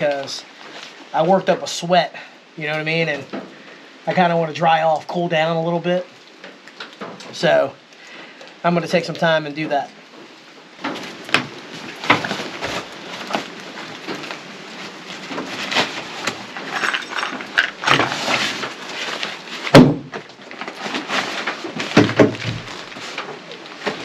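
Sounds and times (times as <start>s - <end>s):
nylon fabric rustling: 10.2s - 24.0s
sharp knocks: 19.7s - 20.2s, 22.0s - 22.7s.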